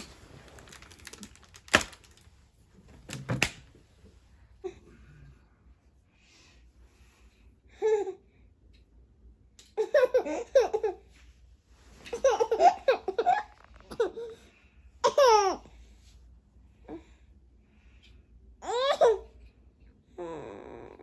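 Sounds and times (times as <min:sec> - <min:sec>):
baby laughing and babbling: 0:09.8 - 0:11.1, 0:12.1 - 0:14.4, 0:15.0 - 0:15.7, 0:18.6 - 0:19.3.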